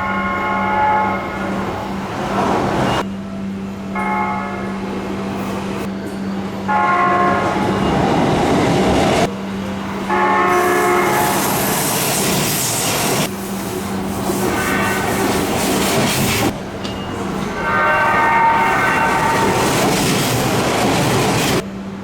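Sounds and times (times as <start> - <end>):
train horn chord blasts: 0.0 - 1.7, 3.1 - 4.9, 6.7 - 7.7, 10.0 - 11.8, 14.5 - 15.2, 17.6 - 19.6
passing train rumble: 0.0 - 22.0.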